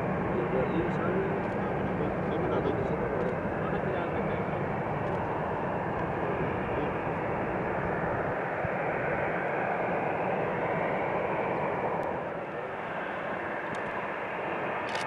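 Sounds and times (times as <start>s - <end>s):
jet engines running: 0.0s - 15.0s.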